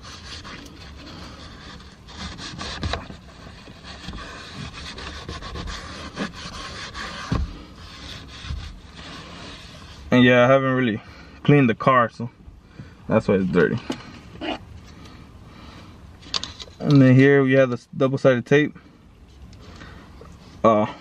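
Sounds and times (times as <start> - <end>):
paper napkin scrubbing a panel: 0.0 - 10.2.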